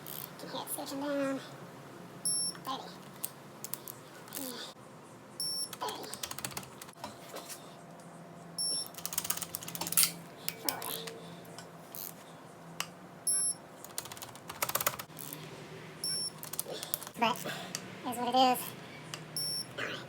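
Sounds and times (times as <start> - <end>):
short high beeps: 2.3 - 2.6, 8.6 - 9.0, 13.3 - 13.6, 16.0 - 16.4, 19.4 - 19.7.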